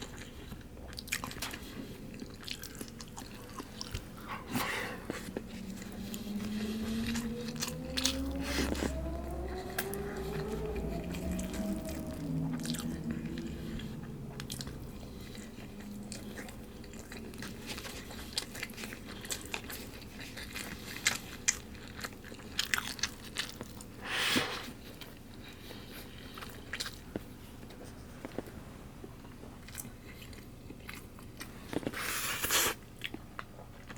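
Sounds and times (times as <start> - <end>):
person chewing and biting: 0.0 - 24.0.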